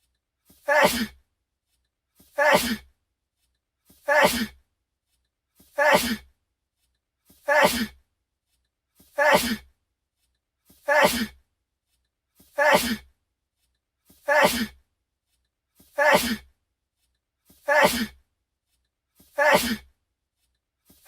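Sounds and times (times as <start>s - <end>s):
man sneezing: 0.6s - 1.2s, 2.4s - 2.8s, 4.0s - 4.6s, 5.8s - 6.2s, 7.5s - 8.0s, 9.2s - 9.6s, 10.9s - 11.4s, 12.6s - 13.0s, 14.3s - 14.8s, 16.0s - 16.4s, 17.7s - 18.2s, 19.4s - 19.9s.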